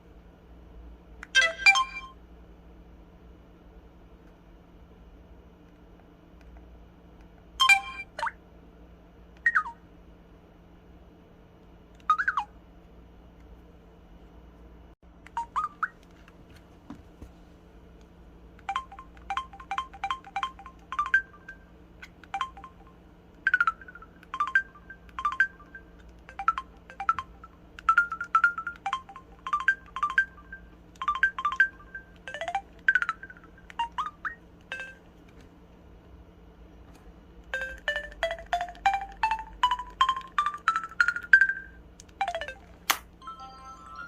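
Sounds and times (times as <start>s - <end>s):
chirpy electronic phone notes: 18.7s - 21.7s, 22.3s - 22.9s, 23.5s - 35.0s.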